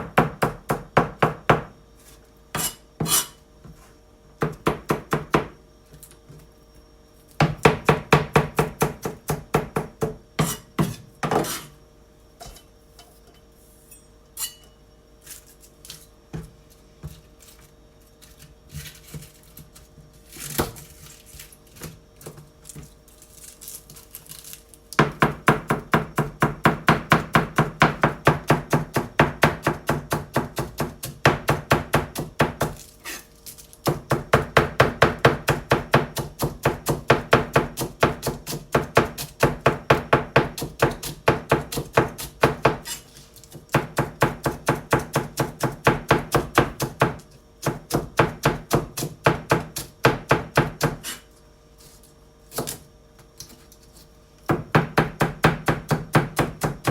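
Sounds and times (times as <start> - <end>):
knife chopping on cutting board: 2.5 - 3.8, 4.4 - 5.6, 7.4 - 11.7, 25.0 - 33.2, 33.8 - 51.2, 52.5 - 52.8, 54.5 - 56.9.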